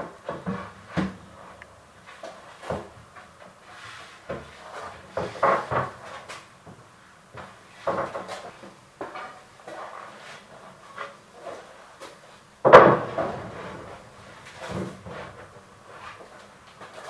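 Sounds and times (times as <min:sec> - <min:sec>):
wooden knocks and clunks: 0:04.3 - 0:09.3, 0:12.6 - 0:15.6.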